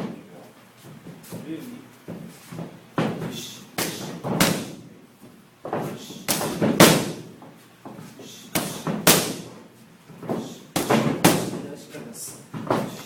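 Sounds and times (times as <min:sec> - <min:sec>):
punches smacking focus mitts: 0:02.6 - 0:04.9, 0:05.7 - 0:07.4, 0:08.5 - 0:09.5, 0:10.2 - 0:11.7.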